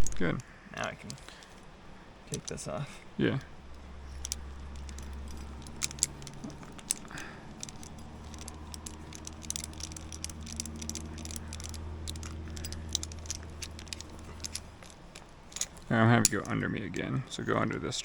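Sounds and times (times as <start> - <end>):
metal climbing gear clinking: 0.0 - 18.0.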